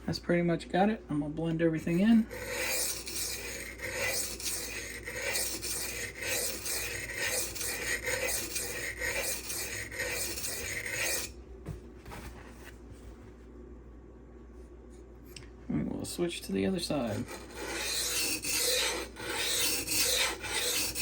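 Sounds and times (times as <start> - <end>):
knife scraping on whetstone: 1.9 - 11.3, 17.0 - 21.0.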